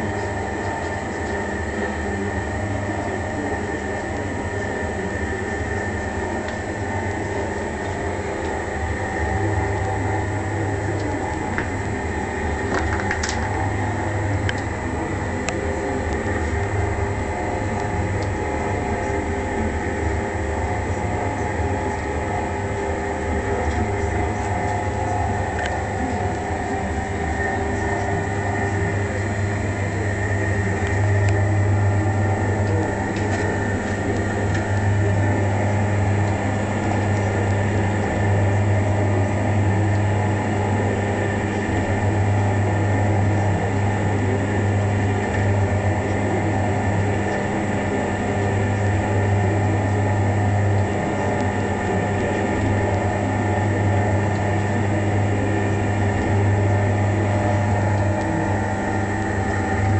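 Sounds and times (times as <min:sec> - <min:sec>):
polishing machine hum: 0:00.0 - 0:59.9.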